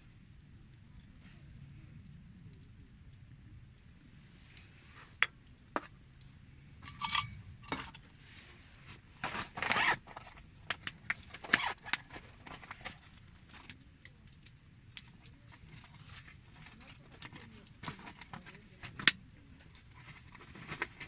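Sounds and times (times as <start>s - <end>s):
cooking gear clicks and clinks: 6.8s - 8.2s, 9.2s - 21.0s.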